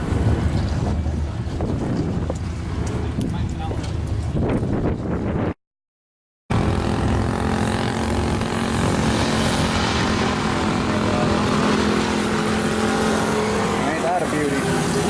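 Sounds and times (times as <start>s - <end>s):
car engine running: 6.5s - 15.0s.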